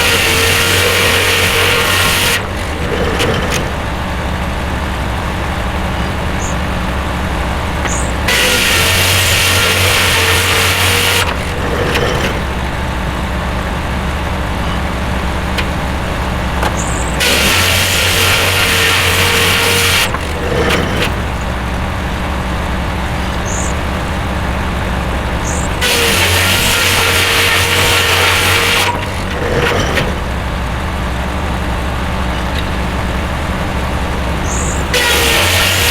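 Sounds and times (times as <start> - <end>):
saw blade cutting wood: 0.0 - 3.9, 7.8 - 12.7, 16.6 - 21.5, 25.4 - 30.4, 34.4 - 35.9
sawmill engine running: 0.0 - 35.9.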